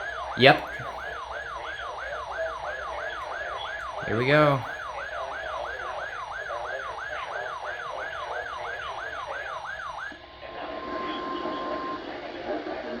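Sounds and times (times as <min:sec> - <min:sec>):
radio static: 0:00.0 - 0:07.5
steady warning alarm tone: 0:00.0 - 0:13.0
wailing siren alarm: 0:00.0 - 0:13.0.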